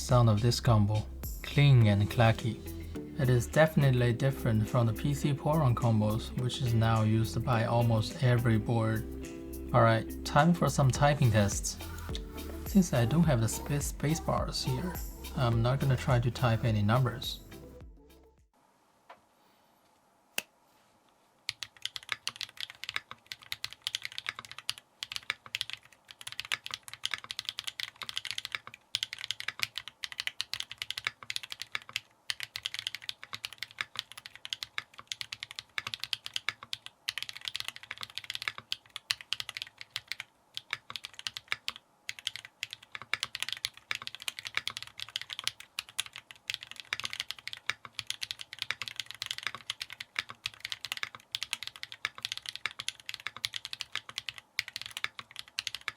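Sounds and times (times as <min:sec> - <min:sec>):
mechanical keyboard typing: 0:21.5 - 0:55.9.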